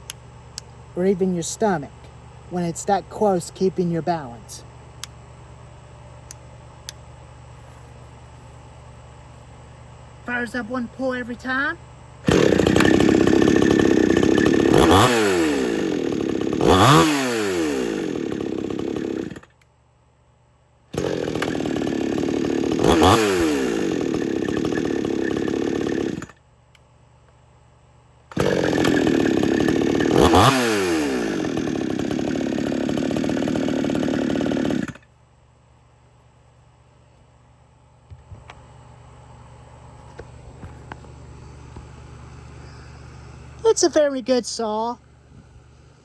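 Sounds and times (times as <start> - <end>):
chainsaw revving: 12.2 - 19.5, 20.9 - 26.4, 28.3 - 35.1.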